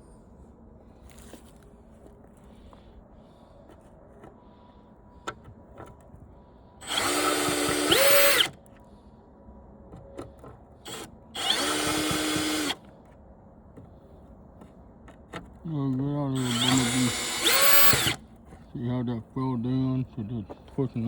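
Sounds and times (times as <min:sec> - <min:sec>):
cordless screw gun whirring: 0:06.8 - 0:08.6, 0:10.9 - 0:12.8, 0:16.4 - 0:18.2.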